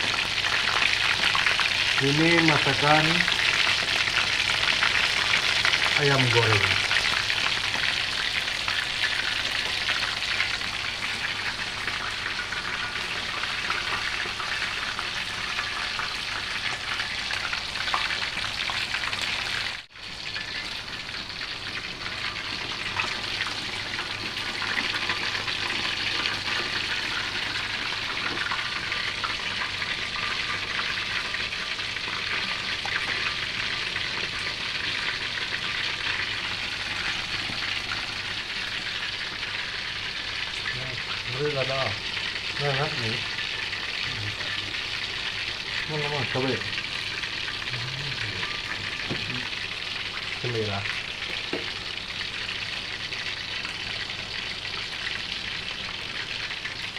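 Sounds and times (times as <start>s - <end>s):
chicken frying in hot oil: 0.0s - 56.9s.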